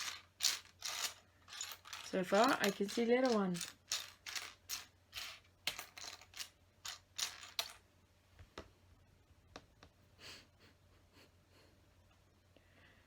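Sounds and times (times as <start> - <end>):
plastic toy bricks clicking: 0.0 - 7.8.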